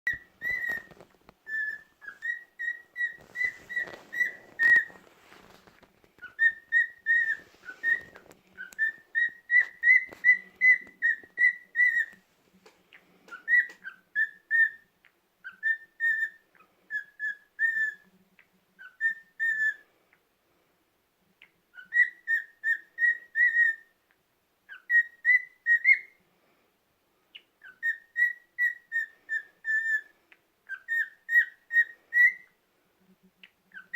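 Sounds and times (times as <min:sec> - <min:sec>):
cockatiel whistling: 0:00.1 - 0:05.6, 0:06.2 - 0:12.2, 0:13.3 - 0:18.1, 0:18.8 - 0:19.8, 0:21.7 - 0:23.9, 0:24.7 - 0:26.2, 0:27.4 - 0:30.1, 0:30.7 - 0:32.6, 0:33.4 - 0:33.9
faint rustling: 0:00.1 - 0:14.3.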